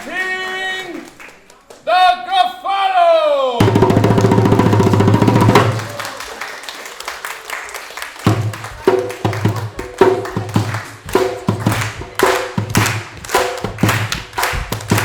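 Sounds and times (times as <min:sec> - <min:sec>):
rapid drum hits: 0:03.6 - 0:06.0, 0:08.3 - 0:15.0
repeating beat with sharp clicks: 0:08.3 - 0:15.0.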